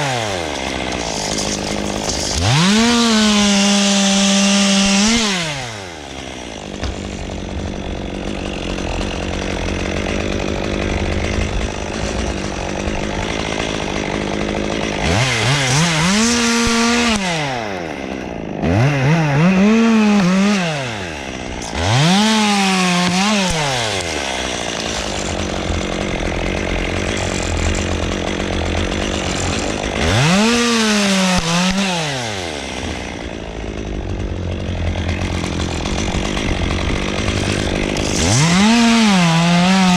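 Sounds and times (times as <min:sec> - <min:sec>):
chainsaw revving and idling: 0:00.0 - 0:39.9.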